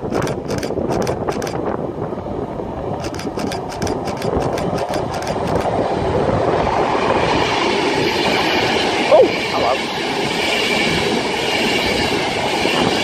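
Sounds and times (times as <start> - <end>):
sharp clicks: 0.0 - 1.6, 3.0 - 5.7
train approaching: 0.0 - 13.0
wind buffeting microphone: 0.0 - 13.0.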